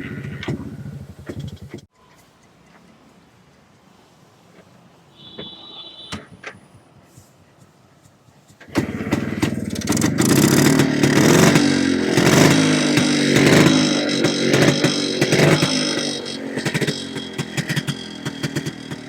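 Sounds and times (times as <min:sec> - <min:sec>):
two-stroke motorcycle engine revving: 0:08.6 - 0:19.0.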